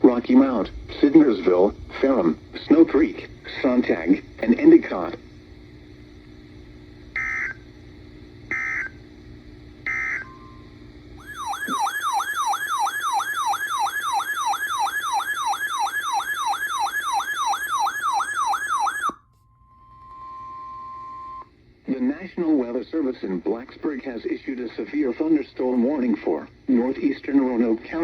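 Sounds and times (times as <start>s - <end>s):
faint hum: 0.0s - 28.0s
warbling electronic siren tone: 11.2s - 20.6s.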